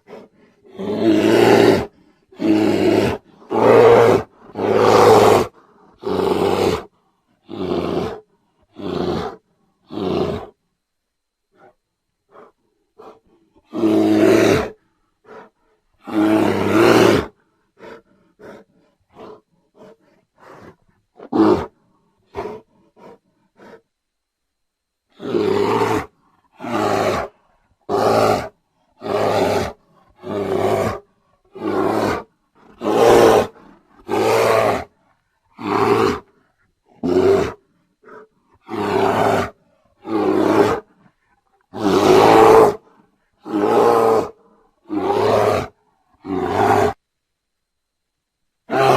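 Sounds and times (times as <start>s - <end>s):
bear roaring: 0.0s - 10.6s, 12.3s - 23.8s, 25.1s - 47.0s, 48.7s - 48.9s.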